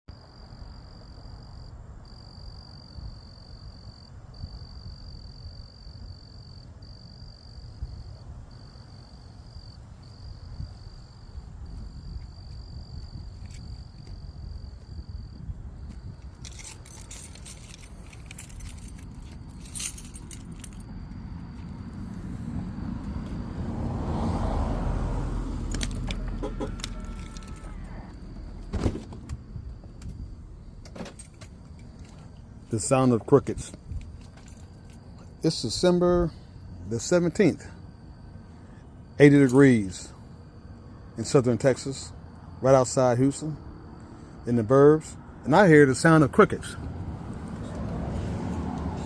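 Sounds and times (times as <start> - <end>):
crickets chirping: 0.1 - 49.0
low background rumble: 10.3 - 23.7
vehicle passing: 16.4 - 28.7, 46.4 - 49.0.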